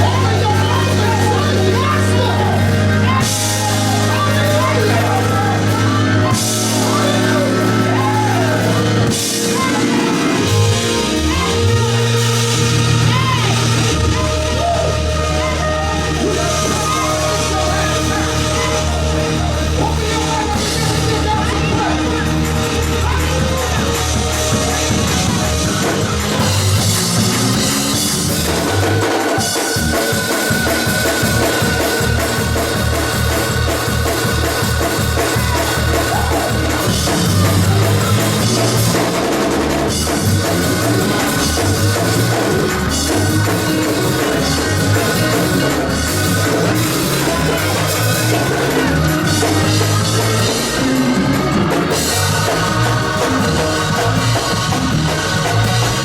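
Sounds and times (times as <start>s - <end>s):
band playing up-tempo instrumental: 0.0s - 56.0s.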